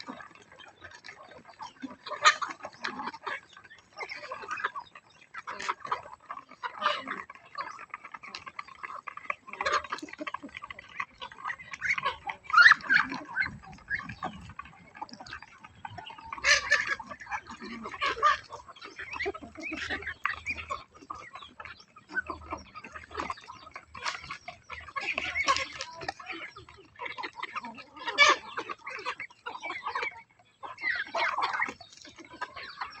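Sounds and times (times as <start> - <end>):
chickens clucking and squawking: 0.0 - 33.0.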